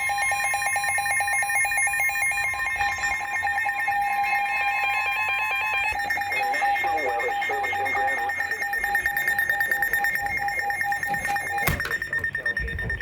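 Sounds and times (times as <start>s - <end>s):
pulsing electronic alarm: 0.0s - 13.0s.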